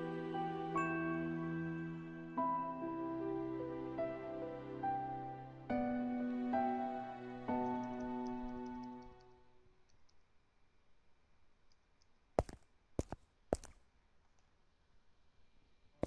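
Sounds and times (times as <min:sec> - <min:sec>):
held musical note: 0:00.0 - 0:09.0
sharp clicks: 0:07.6 - 0:10.3.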